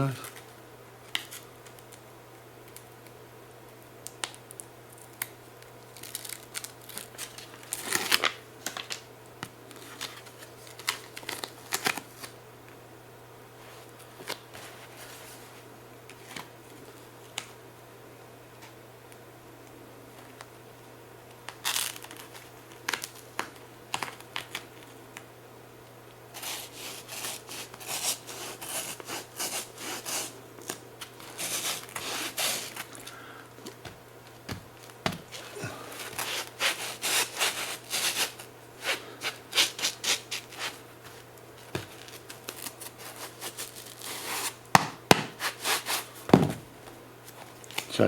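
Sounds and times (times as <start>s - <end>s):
hands rubbing and scratching: 36.0s - 41.2s, 45.4s - 46.1s.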